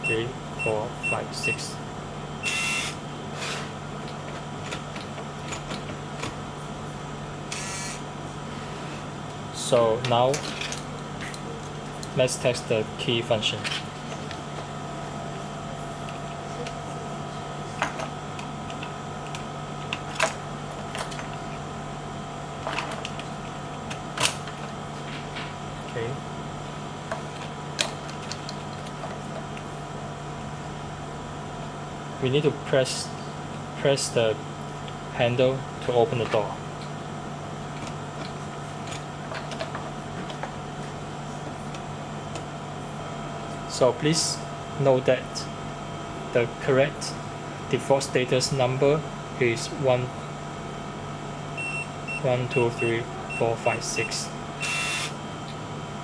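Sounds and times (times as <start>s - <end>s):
steady low hum: 0.0s - 56.0s
keypad beep: 51.6s - 55.1s
mechanical noise bursts: 54.6s - 55.2s.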